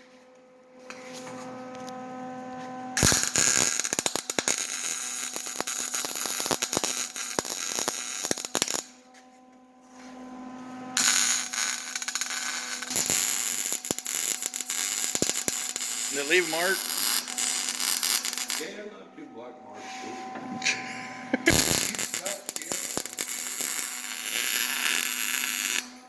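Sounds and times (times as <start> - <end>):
welder hum: 0.0 - 26.0
welding arc crackling: 3.0 - 9.0, 11.0 - 18.8, 21.0 - 26.0.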